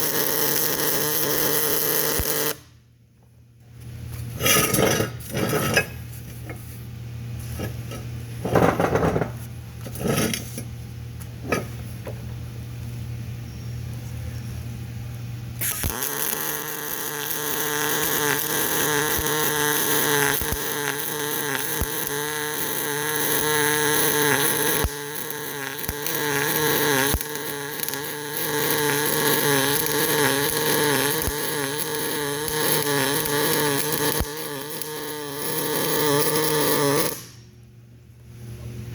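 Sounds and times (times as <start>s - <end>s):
electric welding arc buzzing: 0.0s - 2.8s, 15.5s - 37.6s.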